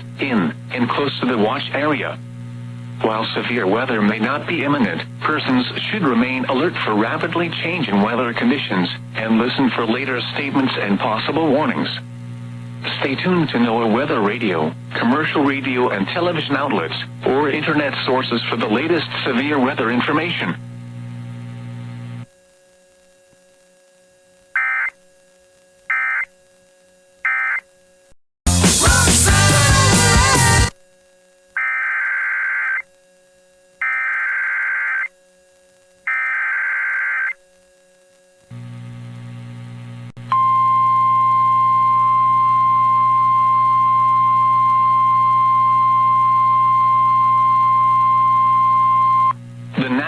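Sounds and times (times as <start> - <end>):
buzzing hum: 0.0 - 28.1, 29.4 - 50.0
faint hum with static: 0.0 - 28.1, 30.7 - 50.0
steady alarm tone: 24.6 - 24.9, 36.1 - 37.3, 40.4 - 49.3.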